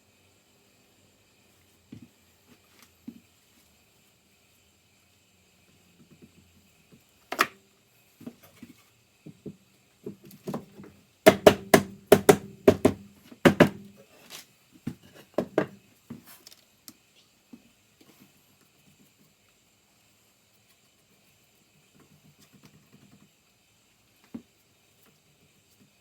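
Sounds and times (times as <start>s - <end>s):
wood knocks and thuds: 9.4s - 13.9s
rapid sharp knocks: 11.3s - 13.8s.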